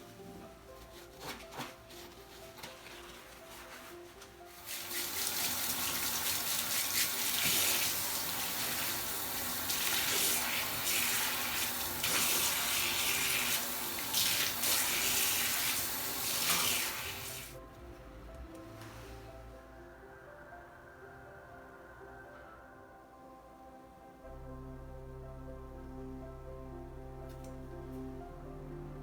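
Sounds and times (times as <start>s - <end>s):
soft background music: 0.0s - 29.0s
tap water running into sink: 4.6s - 17.6s.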